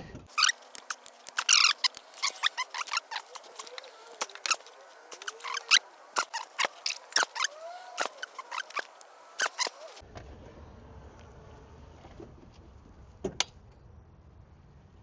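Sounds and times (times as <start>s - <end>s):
faint metallic squeaks: 0.3s - 10.0s
wrench ratchet clicking: 0.3s - 10.0s.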